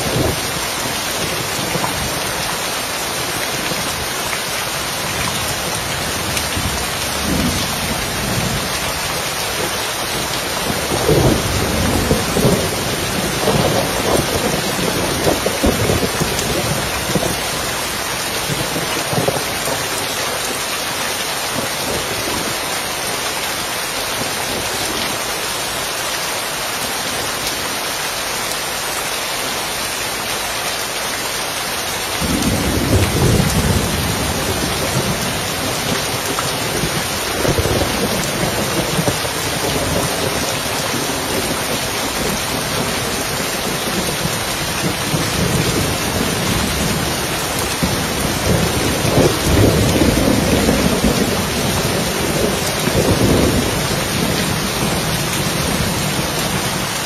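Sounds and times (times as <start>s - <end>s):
rain on a roof: 0.0s - 57.0s
thunder rumbling: 5.5s - 20.6s, 32.2s - 56.9s.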